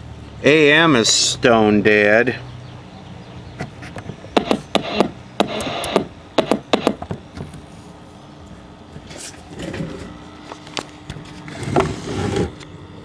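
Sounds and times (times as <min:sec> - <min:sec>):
short scraping rub: 0:11.2 - 0:12.6.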